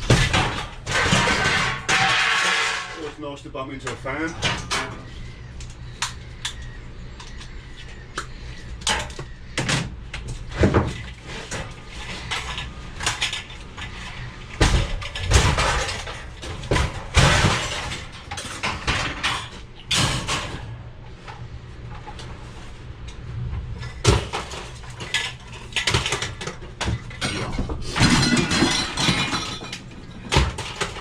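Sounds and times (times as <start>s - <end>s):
metal clanking on metal: 0.0s - 5.3s, 10.6s - 20.8s, 24.0s - 31.0s
metal rattling and scraping: 0.0s - 6.5s, 7.3s - 31.0s.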